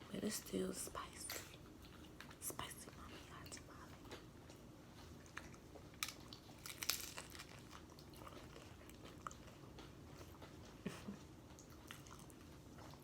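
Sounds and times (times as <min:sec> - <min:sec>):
crunching and chewing chips: 0:03.5 - 0:10.8.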